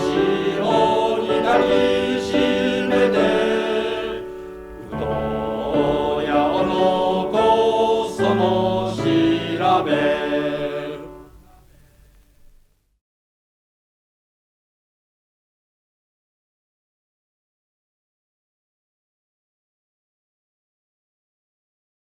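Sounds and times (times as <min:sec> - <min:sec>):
choir singing: 0:00.0 - 0:11.6.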